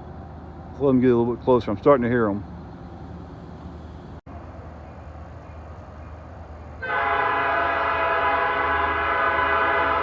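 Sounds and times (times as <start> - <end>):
locomotive air horn: 6.8 - 10.0.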